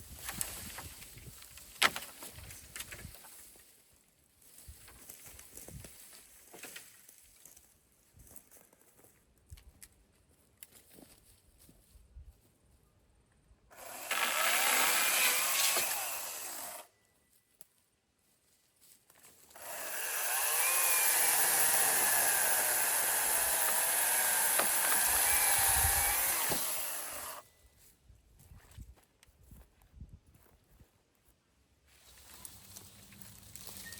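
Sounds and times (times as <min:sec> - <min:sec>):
chainsaw cutting wood: 0:13.7 - 0:16.9, 0:19.5 - 0:27.4.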